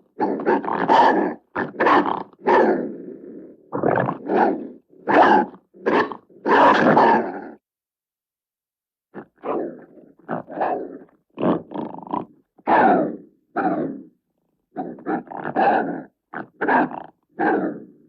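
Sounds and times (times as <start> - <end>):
monster snarls and growls: 1.6 - 4.8.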